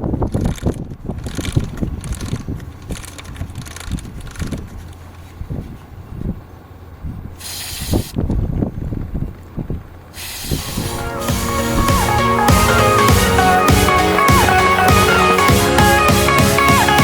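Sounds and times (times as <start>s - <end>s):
aerosol can spraying: 7.4s - 8.2s, 10.2s - 17.0s.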